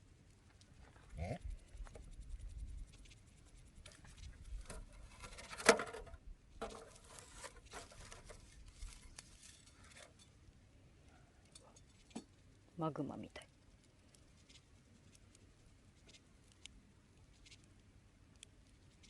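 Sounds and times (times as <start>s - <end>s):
wood fire crackling: 0.0s - 5.0s, 6.4s - 12.8s, 13.4s - 19.0s.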